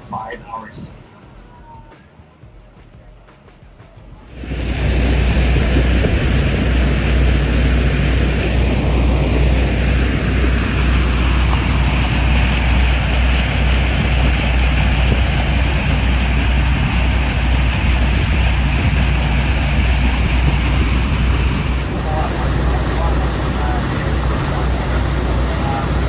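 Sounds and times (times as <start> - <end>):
boat engine droning: 4.3 - 26.0
wind and water rushing: 4.3 - 26.0.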